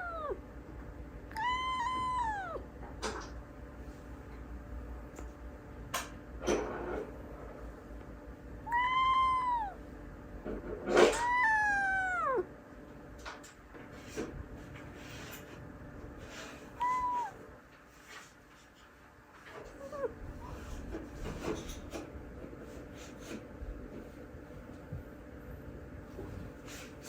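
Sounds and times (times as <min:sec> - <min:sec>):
cat meowing: 0:00.0 - 0:00.4, 0:01.3 - 0:02.7, 0:08.6 - 0:09.8, 0:11.0 - 0:12.5, 0:16.7 - 0:17.4, 0:19.7 - 0:20.2.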